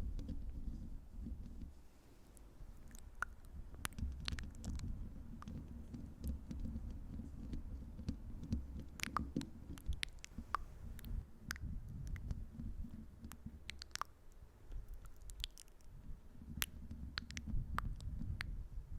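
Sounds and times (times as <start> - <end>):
rubbing rumble on microphone: 0.0 - 13.8, 14.7 - 18.9
sharp wet clicks: 2.3 - 18.6.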